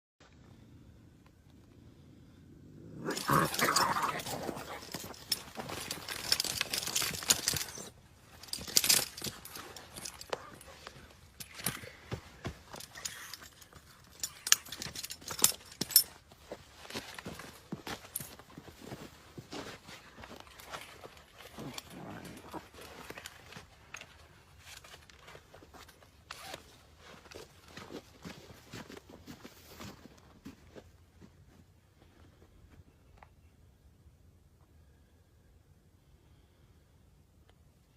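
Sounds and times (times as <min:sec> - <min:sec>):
scuffling and rustling: 0:03.0 - 0:30.8.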